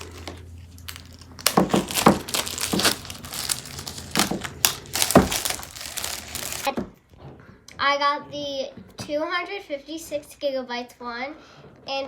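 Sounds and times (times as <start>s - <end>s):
packaging crinkling and rustling: 0.0s - 6.7s.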